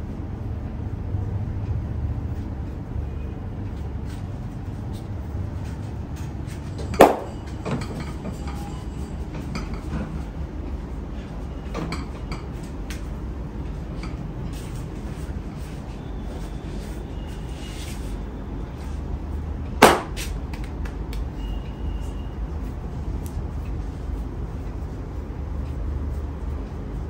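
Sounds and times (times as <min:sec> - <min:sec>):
sharp loud smack: 0:07.0 - 0:07.3, 0:19.8 - 0:20.2.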